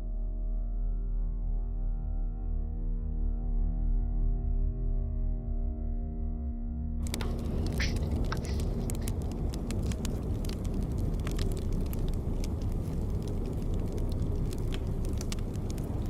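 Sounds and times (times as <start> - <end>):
fire crackling and popping: 7.0 - 16.0
low fire rumble: 7.0 - 16.0.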